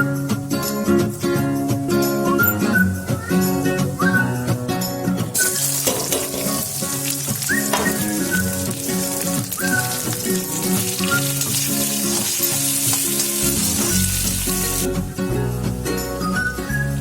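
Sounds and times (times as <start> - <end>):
background music: 0.0 - 17.0
food sizzling in a pan: 5.3 - 15.0.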